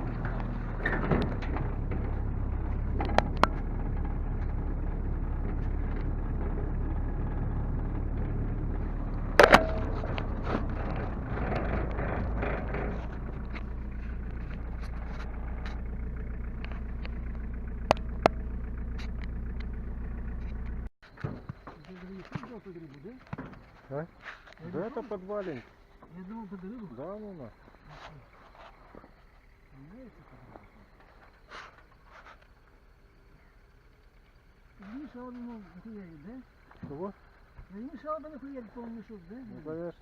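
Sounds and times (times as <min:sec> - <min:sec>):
sharp knocks and rattles: 0:00.0 - 0:26.8
vehicle engine droning: 0:00.0 - 0:40.0.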